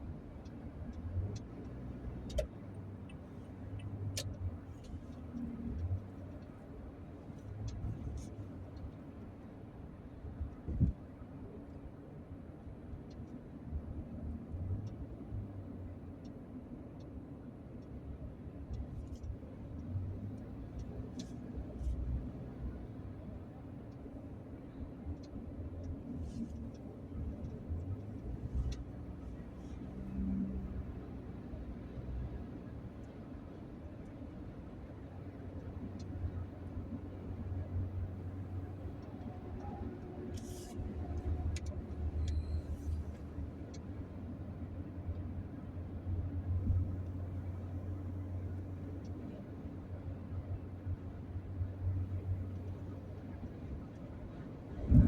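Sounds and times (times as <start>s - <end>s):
vehicle rumble: 0.0s - 55.0s
faint clicks: 18.6s - 22.0s, 25.1s - 30.2s, 35.4s - 44.2s.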